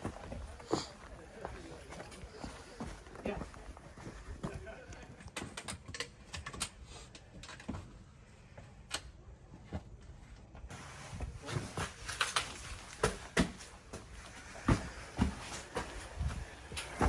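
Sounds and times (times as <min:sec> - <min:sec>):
boots stepping on rocky trail: 0:00.0 - 0:05.0, 0:11.2 - 0:17.0.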